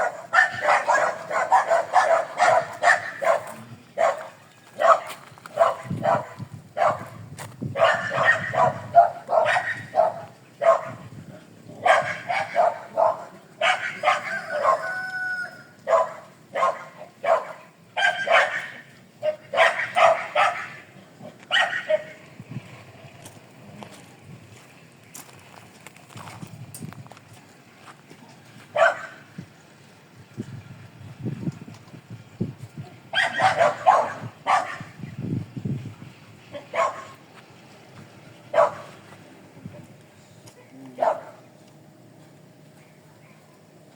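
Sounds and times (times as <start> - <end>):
dog barking: 0.0 - 11.1, 11.8 - 15.2, 15.8 - 20.9, 21.5 - 22.2, 28.7 - 29.2, 33.1 - 35.0, 36.5 - 37.2, 38.5 - 38.9, 40.5 - 41.5.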